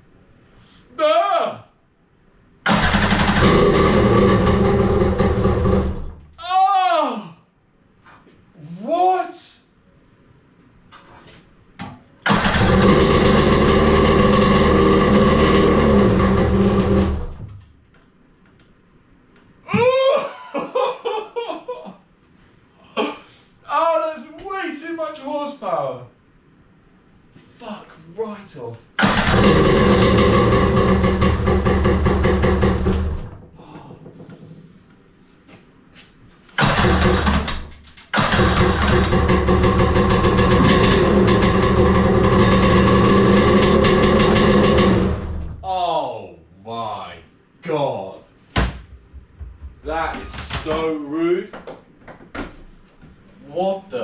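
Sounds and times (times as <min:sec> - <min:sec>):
jet ski engine starting and running: 0:02.7 - 0:06.1, 0:12.2 - 0:17.4, 0:29.0 - 0:33.3, 0:36.6 - 0:45.4.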